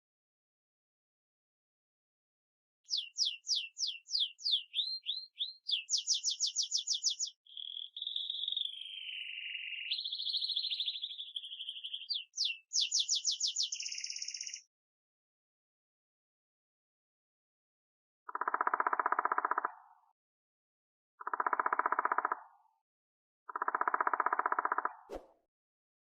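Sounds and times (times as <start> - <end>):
songbird singing: 2.9 - 14.7.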